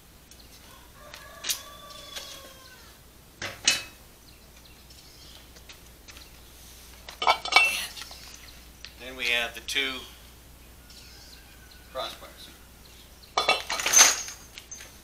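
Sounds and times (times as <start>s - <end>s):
chicken calling: 0.5s - 3.1s, 10.0s - 13.4s
sharp knocks of metal parts: 3.4s - 4.0s.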